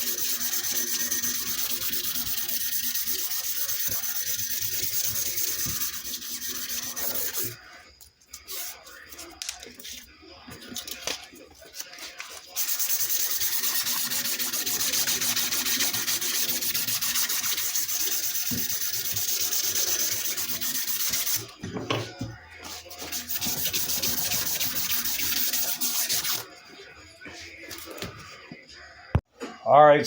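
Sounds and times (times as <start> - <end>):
sandpaper rubbing on steel: 0.0 - 7.6, 12.5 - 21.5, 22.7 - 26.5.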